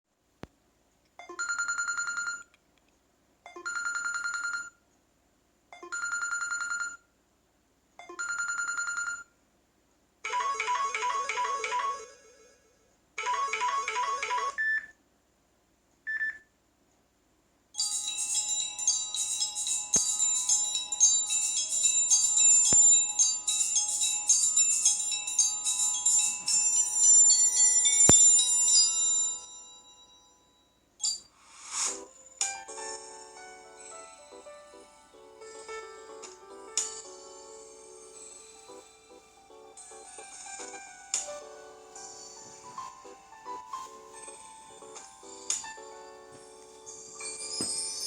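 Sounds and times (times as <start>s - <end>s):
chiming ringtone: 1.3s - 2.5s, 3.6s - 4.7s, 5.8s - 7.0s, 8.0s - 9.3s, 10.3s - 14.9s, 17.8s - 48.0s
ringtone melody: 10.3s - 14.8s, 17.8s - 48.0s.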